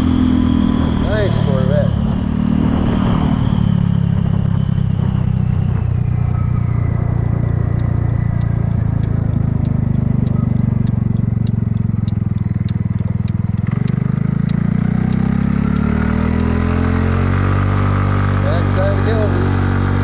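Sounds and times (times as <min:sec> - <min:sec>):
scooter engine running: 0:00.0 - 0:03.4, 0:04.5 - 0:20.0.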